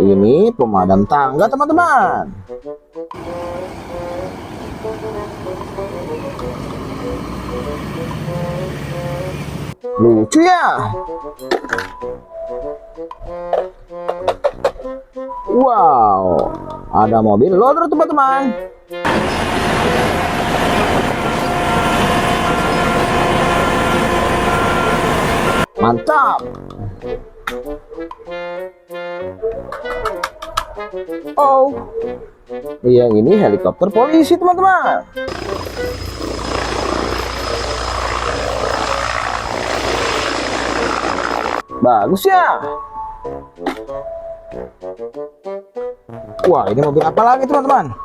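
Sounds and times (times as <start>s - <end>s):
helicopter rotor and engine: 3.2s - 9.8s, 19.1s - 25.7s, 35.3s - 41.6s
heavy machinery rumble: 19.1s - 25.7s, 35.3s - 41.6s.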